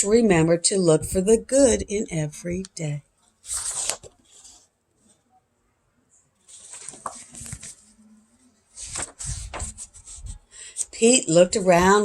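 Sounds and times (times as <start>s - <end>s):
book pages rustling: 3.2s - 5.2s, 6.4s - 10.5s.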